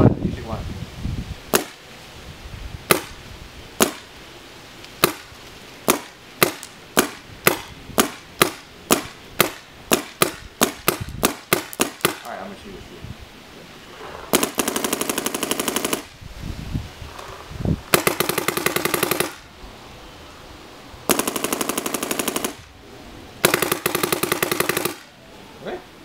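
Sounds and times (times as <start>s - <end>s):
paintball markers firing rapidly: 2.9s - 3.2s, 5.9s - 12.3s, 14.3s - 16.1s, 17.9s - 19.4s, 21.1s - 22.6s, 23.4s - 25.1s.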